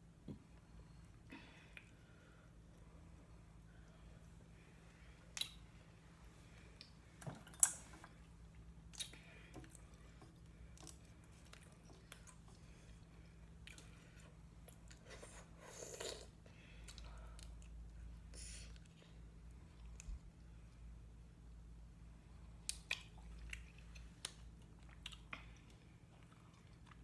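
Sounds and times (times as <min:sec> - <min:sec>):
wet chewing and squishing: 0:06.8 - 0:15.3, 0:22.6 - 0:27.0.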